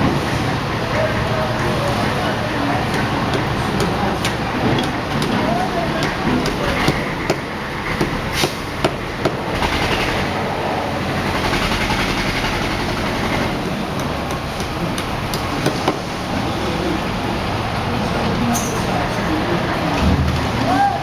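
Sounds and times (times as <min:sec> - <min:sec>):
construction and street din: 0:00.0 - 0:21.0
sharp knocks: 0:02.9 - 0:10.2.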